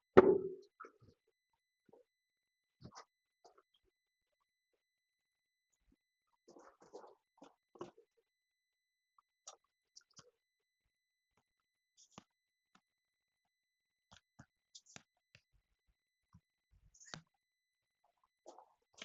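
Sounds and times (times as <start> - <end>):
heavy thump: 0.2 - 0.6.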